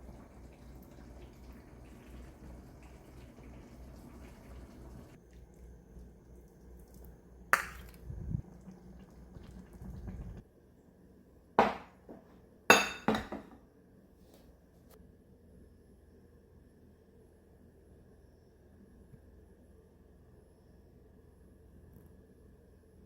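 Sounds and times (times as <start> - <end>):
low steady background noise: 0.0 - 23.0
dishes and cutlery clinking: 11.6 - 13.6.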